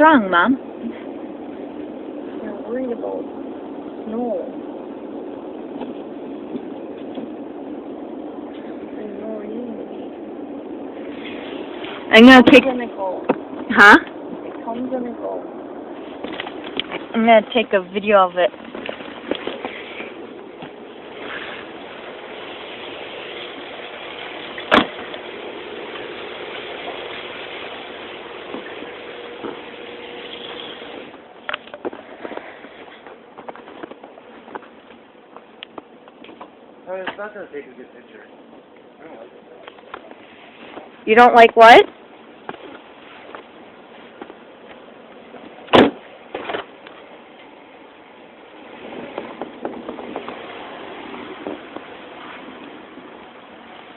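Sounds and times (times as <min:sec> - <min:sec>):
rough rustling noise: 0:00.0 - 0:37.6, 0:38.3 - 0:53.9
engine hum: 0:00.0 - 0:53.9
steady hiss: 0:00.0 - 0:53.9
loud thump: 0:24.6 - 0:25.1, 0:45.7 - 0:46.7.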